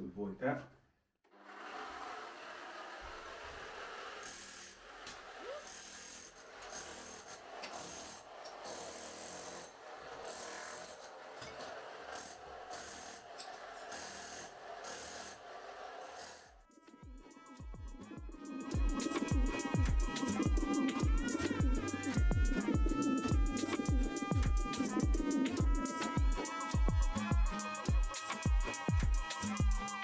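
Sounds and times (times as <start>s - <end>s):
demolition hammer chiselling tile: 4.2s - 16.5s.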